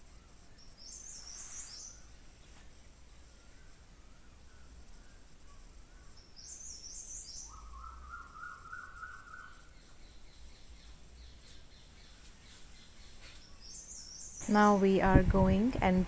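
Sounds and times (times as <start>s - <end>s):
faint low hum: 0.0s - 16.0s
birds chirping: 3.4s - 16.0s.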